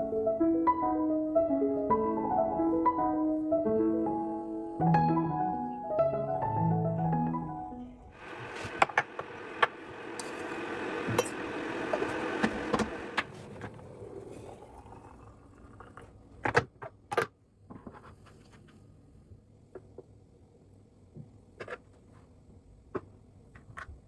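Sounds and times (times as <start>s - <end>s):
mechanical hum: 8.0s - 15.3s.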